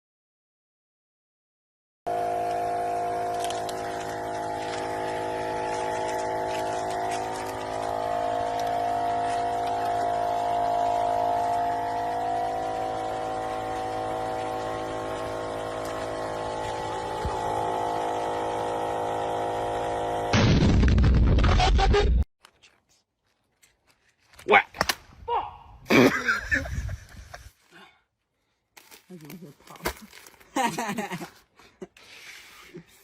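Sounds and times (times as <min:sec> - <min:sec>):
engine humming steadily: 0:02.1 - 0:20.4.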